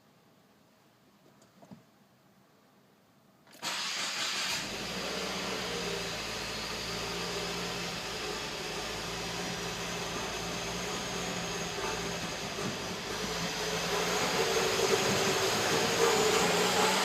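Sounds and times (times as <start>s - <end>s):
car engine starting and idling: 3.5s - 17.0s.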